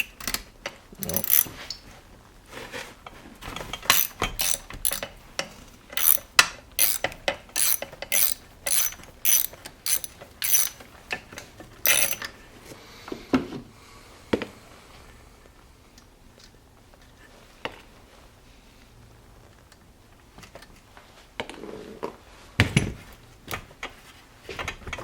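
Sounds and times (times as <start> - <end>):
ratchet wrench clicking: 0.0 - 0.4, 1.0 - 1.6, 3.9 - 5.1, 6.0 - 10.8, 11.8 - 12.3
metal parts knocking: 3.7 - 5.2, 5.9 - 10.8, 11.9 - 12.3.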